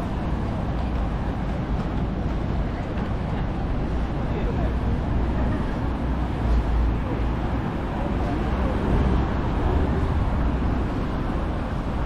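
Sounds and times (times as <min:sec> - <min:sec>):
faint voices of passers-by: 0:00.0 - 0:12.0
road traffic rumble: 0:00.0 - 0:12.0.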